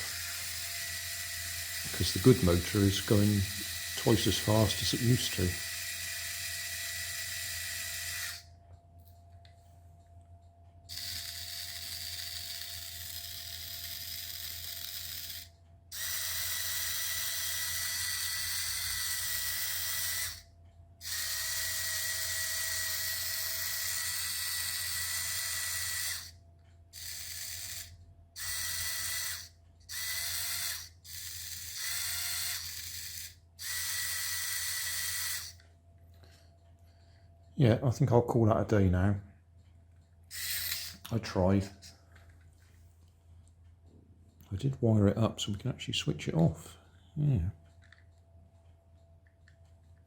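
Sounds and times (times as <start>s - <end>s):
toy car motors whirring: 0.0s - 8.5s, 10.9s - 35.7s, 40.3s - 42.4s.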